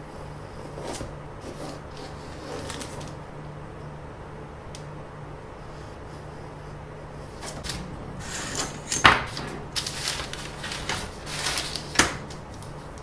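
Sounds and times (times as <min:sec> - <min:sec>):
objects rustling and scraping: 0:00.5 - 0:03.2, 0:07.2 - 0:13.0.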